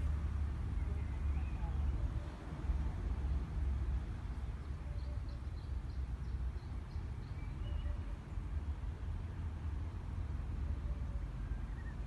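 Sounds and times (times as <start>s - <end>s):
faint high bird chirps: 7.2s - 8.1s.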